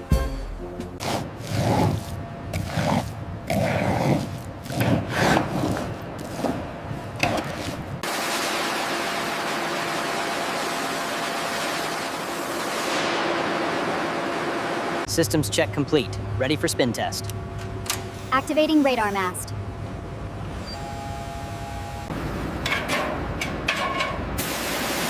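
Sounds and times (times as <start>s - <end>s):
scraping strokes: 1.0s - 8.0s.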